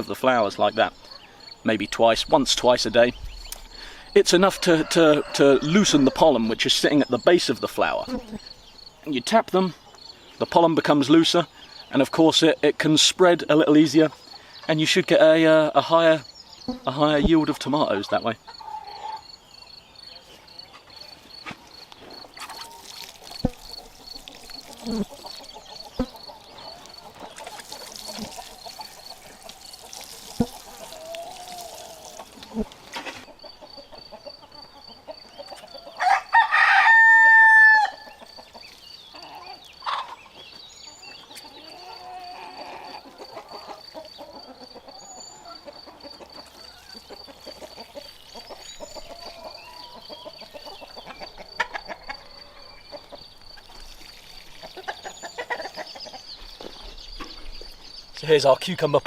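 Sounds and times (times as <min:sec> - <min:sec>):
chickens clucking: 0:00.0 - 0:10.0, 0:16.8 - 0:36.2, 0:38.0 - 0:58.3
rooster crowing: 0:04.3 - 0:06.4, 0:35.8 - 0:38.1.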